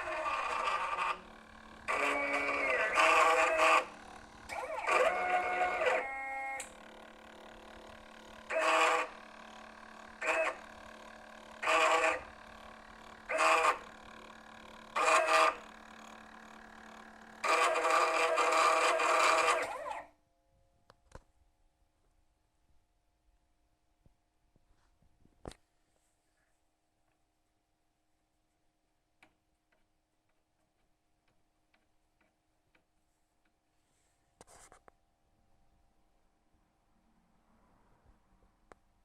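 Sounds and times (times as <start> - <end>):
stepper motors humming: 0.0 - 20.1.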